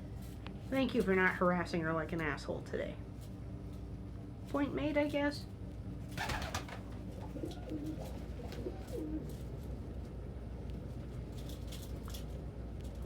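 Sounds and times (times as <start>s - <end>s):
steady low hum: 0.0s - 13.0s
pigeons cooing: 6.2s - 9.5s.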